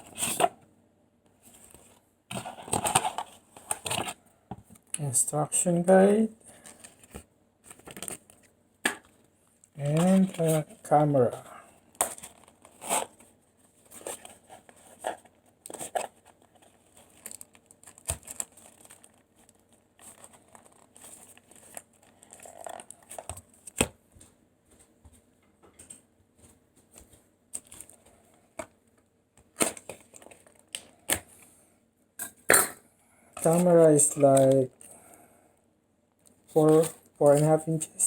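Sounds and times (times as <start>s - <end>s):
plastic packaging crinkling: 11.9s - 23.9s.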